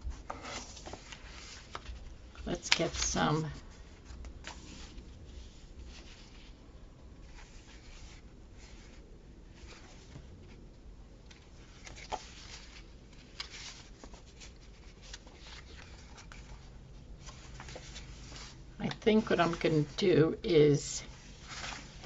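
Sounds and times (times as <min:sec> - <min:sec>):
paper rustling and scraping: 0:00.1 - 0:06.6, 0:11.6 - 0:19.9, 0:21.0 - 0:22.0.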